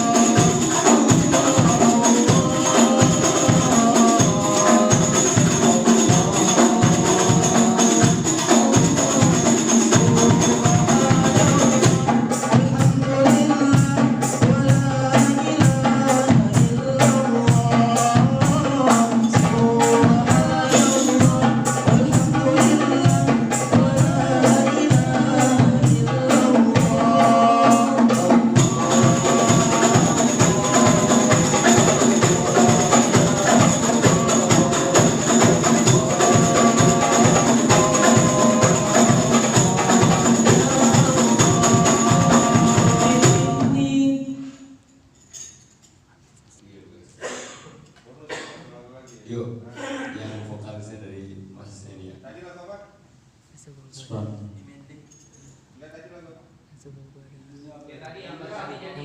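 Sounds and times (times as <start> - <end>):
tambourine jingling: 0.0 - 12.6, 27.9 - 43.6, 44.9 - 46.0
frame drums beating: 0.0 - 44.0.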